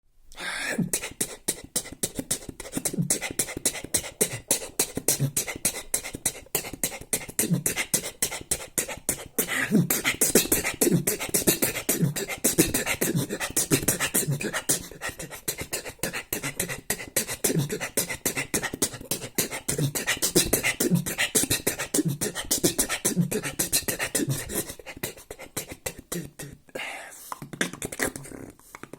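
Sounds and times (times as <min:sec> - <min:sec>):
beatboxing: 0:00.4 - 0:28.9.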